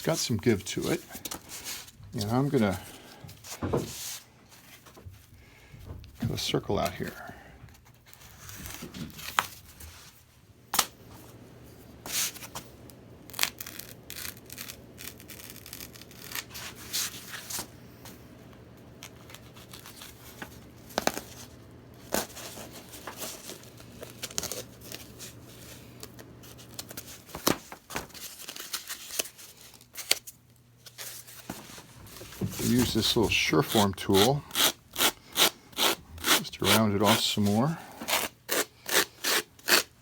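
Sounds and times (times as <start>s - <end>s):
packing foam being cut: 13.3s - 17.7s, 19.0s - 27.6s, 32.0s - 40.0s.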